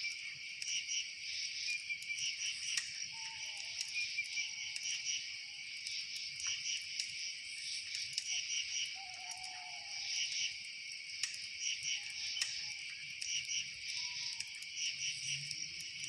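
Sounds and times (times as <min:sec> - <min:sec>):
crickets and night insects trilling: 0:00.0 - 0:16.0
faint sharp ticks: 0:01.8 - 0:05.0, 0:05.8 - 0:07.3, 0:07.9 - 0:08.4, 0:10.3 - 0:11.6, 0:12.3 - 0:16.0.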